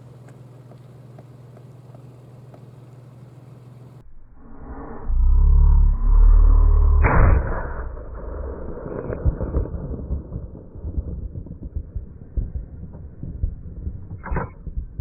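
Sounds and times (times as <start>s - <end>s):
faint crackling and rustling: 0.0s - 4.0s
heavy low rumble: 4.0s - 15.0s
sharp gunshot: 7.0s - 10.6s.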